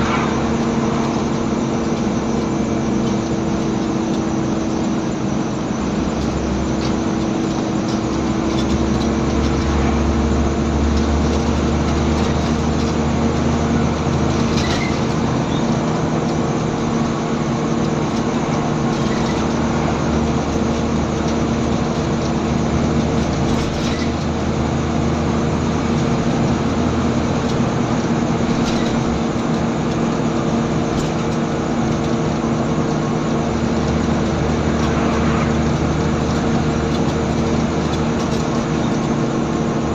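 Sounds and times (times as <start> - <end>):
bus diesel engine droning: 0.0 - 39.9.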